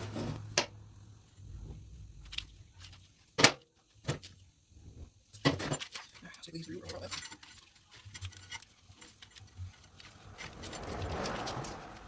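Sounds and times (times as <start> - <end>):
tools and wire clicking: 5.3 - 12.0.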